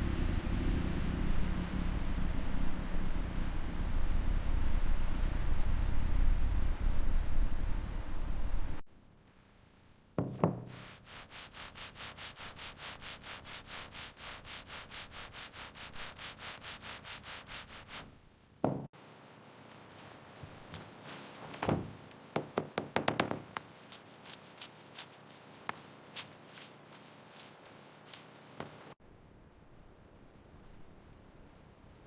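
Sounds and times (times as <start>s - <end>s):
hand rubbing on a surface: 10.4s - 18.2s, 22.3s - 29.0s.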